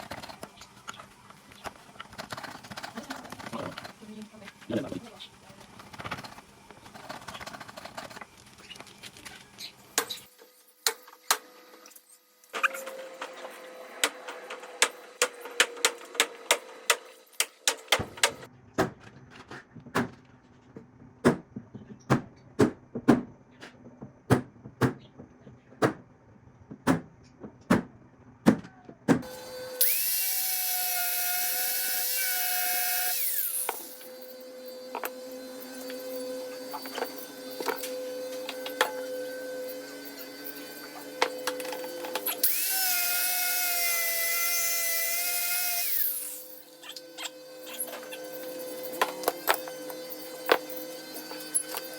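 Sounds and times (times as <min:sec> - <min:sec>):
power drill running: 0:29.2 - 0:51.9.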